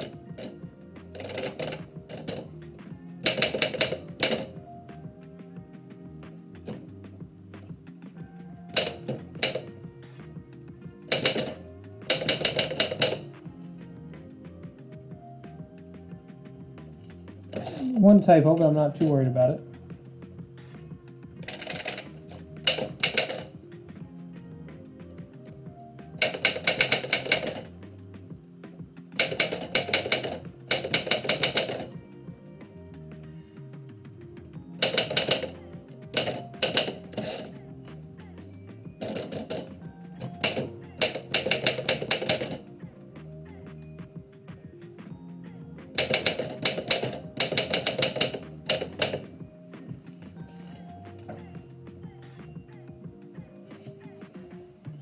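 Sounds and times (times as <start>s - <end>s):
typewriter keys striking: 0.0s - 4.6s, 11.0s - 13.6s, 21.4s - 24.1s, 24.8s - 32.1s, 34.7s - 38.4s, 39.0s - 42.8s, 45.8s - 51.6s
background music: 0.0s - 55.0s.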